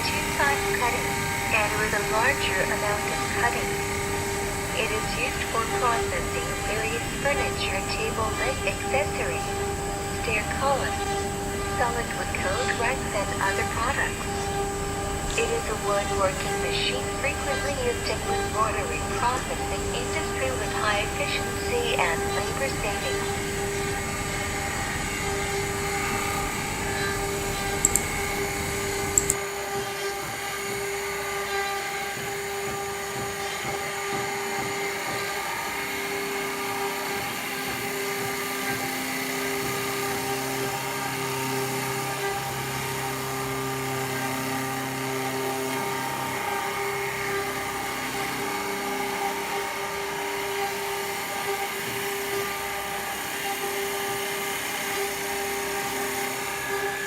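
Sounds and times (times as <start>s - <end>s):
wood lathe whining: 0.0s - 57.0s
sharp clicks: 27.8s - 28.2s, 29.1s - 29.4s.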